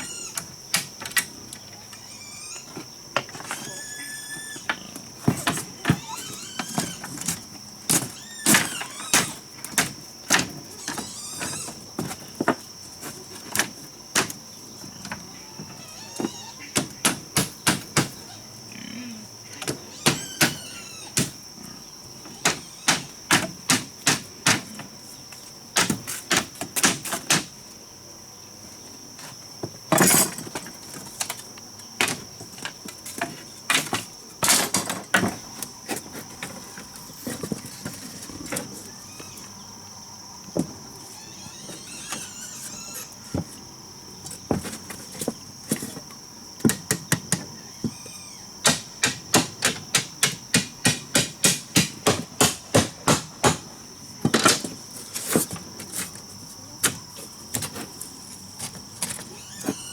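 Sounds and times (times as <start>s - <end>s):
knocks on wood: 48.6s - 53.6s.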